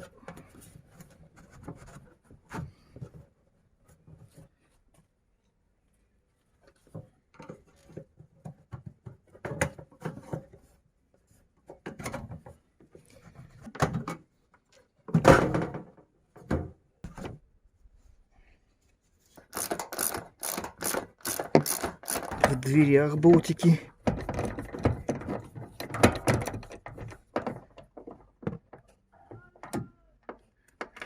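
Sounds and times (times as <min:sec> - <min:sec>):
tools and car parts clattering: 0:19.4 - 0:29.1
ratchet wrench clicking: 0:19.5 - 0:22.5.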